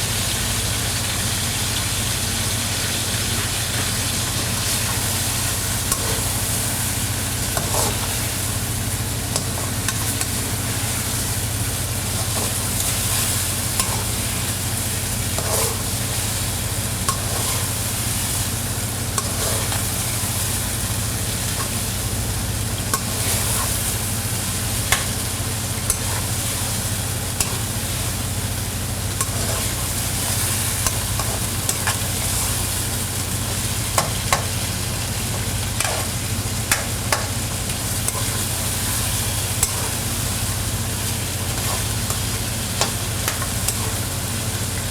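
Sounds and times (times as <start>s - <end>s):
food sizzling in a pan: 0.0s - 44.9s
spatula scraping a pan: 5.8s - 6.8s, 7.4s - 8.4s, 12.1s - 14.5s, 15.2s - 16.4s, 17.0s - 18.4s, 19.1s - 19.9s, 25.9s - 26.8s, 29.2s - 32.6s, 35.3s - 37.3s, 37.9s - 40.4s, 41.1s - 44.1s.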